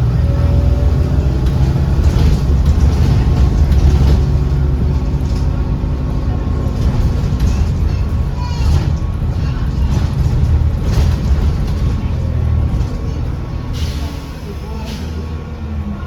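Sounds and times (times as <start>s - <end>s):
bus diesel engine drone: 0.0s - 16.0s.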